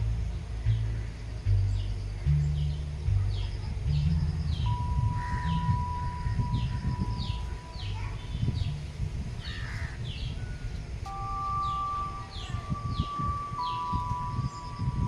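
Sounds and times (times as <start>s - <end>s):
low rumble: 0.0s - 15.0s
bird chirping: 0.1s - 15.0s
steady ringing tones: 4.6s - 15.0s.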